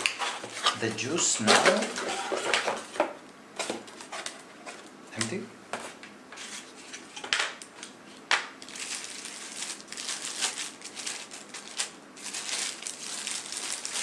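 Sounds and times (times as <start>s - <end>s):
wrapping crinkling: 8.6s - 14.0s.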